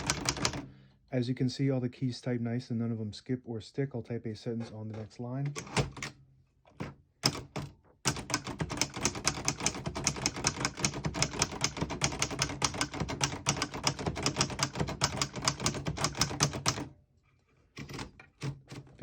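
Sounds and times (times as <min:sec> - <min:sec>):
typewriter keystrokes: 0:00.0 - 0:00.7, 0:07.2 - 0:16.9.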